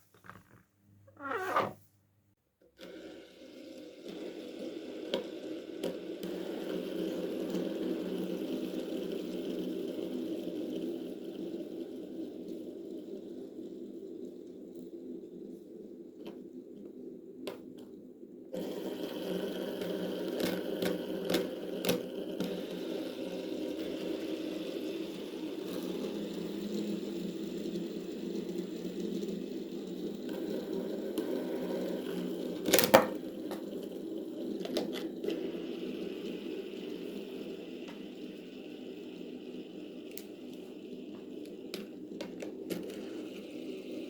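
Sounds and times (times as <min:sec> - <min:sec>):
plastic toy clicks and pops: 0:32.7 - 0:33.7.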